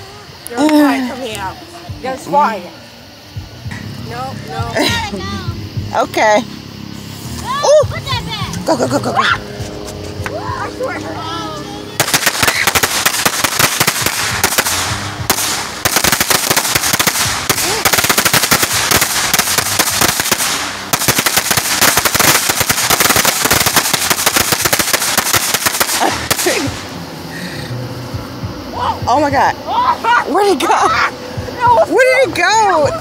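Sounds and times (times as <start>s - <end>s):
firework crackling: 6.8s - 27.3s.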